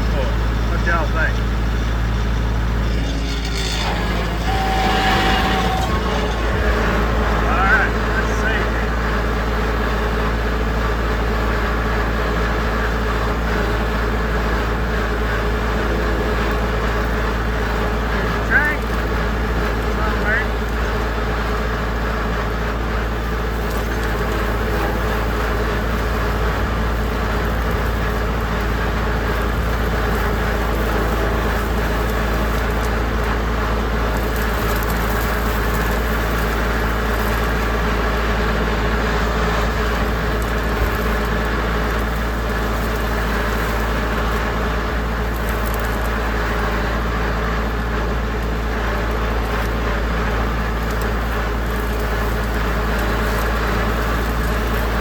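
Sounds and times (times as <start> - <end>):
tractor engine running: 0.0 - 55.0.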